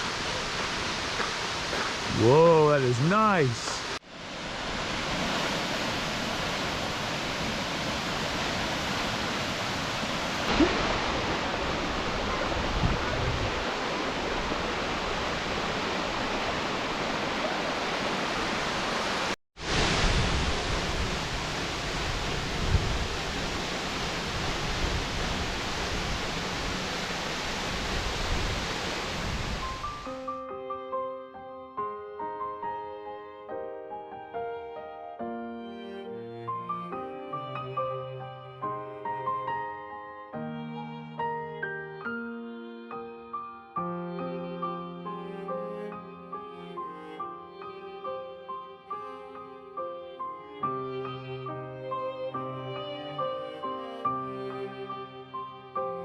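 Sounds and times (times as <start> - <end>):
waterfall roar: 0.0 - 30.0
piano music: 29.6 - 56.0.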